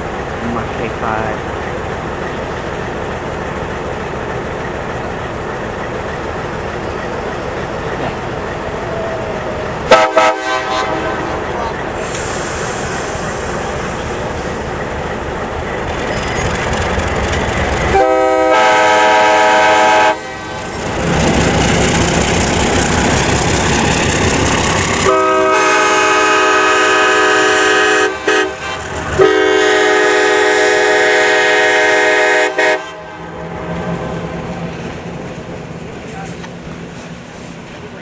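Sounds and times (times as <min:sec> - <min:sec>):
air horn chord blasts: 0:09.9 - 0:11.4, 0:17.9 - 0:20.6, 0:25.0 - 0:33.2.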